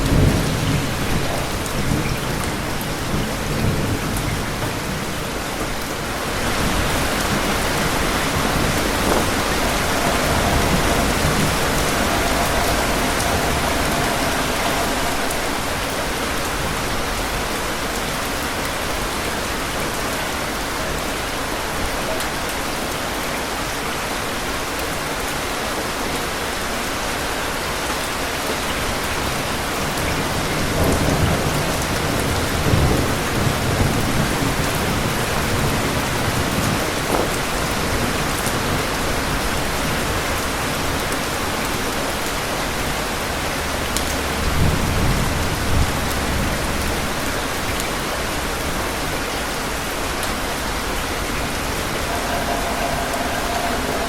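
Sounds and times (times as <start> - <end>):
rolling thunder: 0.0 - 21.0, 43.6 - 54.0
steady rain: 0.0 - 54.0.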